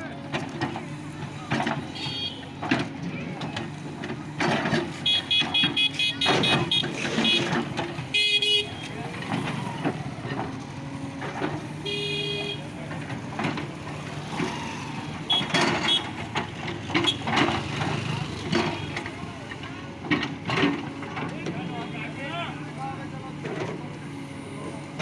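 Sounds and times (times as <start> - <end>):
vehicle engine running: 0.0 - 25.0
knocks and clatter: 12.9 - 21.6.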